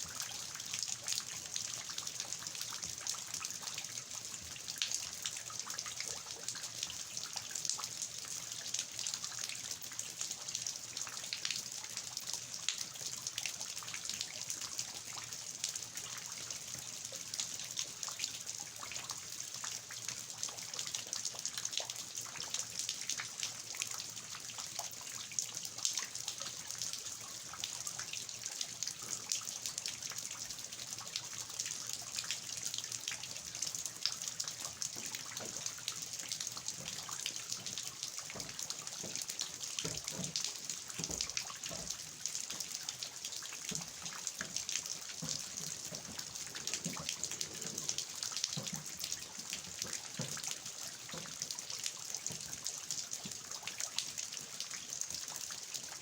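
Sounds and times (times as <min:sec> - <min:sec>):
water dripping from eaves: 0:00.0 - 0:56.0
steady rain hiss: 0:43.9 - 0:50.1.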